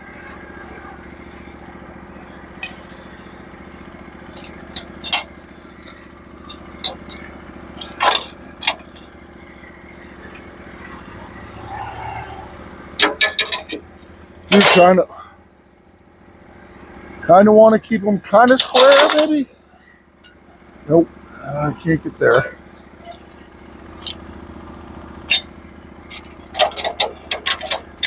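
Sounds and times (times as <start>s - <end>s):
sawmill engine running: 0.0s - 28.0s
metal clinks and knocks: 3.9s - 9.2s, 13.0s - 15.0s, 18.4s - 19.4s, 23.0s - 24.6s, 25.2s - 28.0s.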